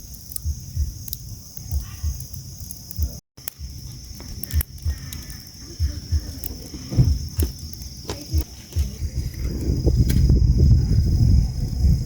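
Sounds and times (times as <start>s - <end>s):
insects chirring: 0.0s - 12.0s
low thumps and knocks: 5.8s - 12.0s.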